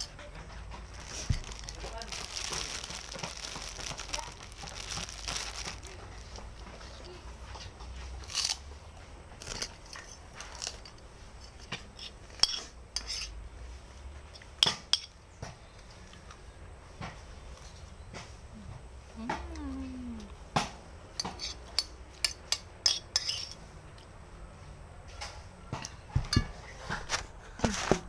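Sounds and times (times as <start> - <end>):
rustling crinkling noise: 0.0 - 14.4, 23.4 - 28.0
cutlery clinking against bowl: 9.4 - 13.4, 14.3 - 15.2, 21.1 - 24.1.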